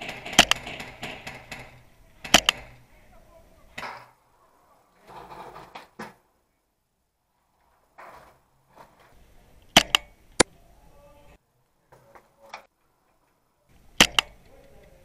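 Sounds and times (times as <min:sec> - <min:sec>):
airsoft rifle shots: 0:00.0 - 0:02.9, 0:09.7 - 0:10.5, 0:13.9 - 0:14.5
faint rustling: 0:07.3 - 0:15.0.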